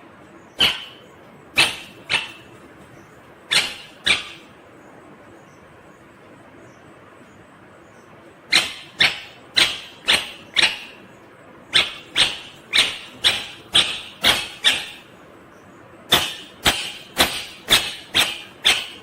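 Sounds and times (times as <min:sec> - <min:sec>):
parakeet harsh calls: 0:00.4 - 0:04.6, 0:08.5 - 0:15.2, 0:16.1 - 0:19.0.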